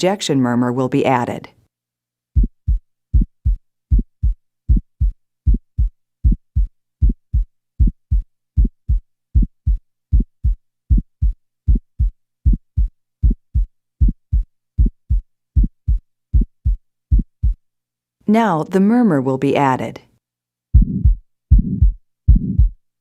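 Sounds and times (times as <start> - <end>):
heartbeat low thuds: 2.4 - 17.6, 20.8 - 22.8.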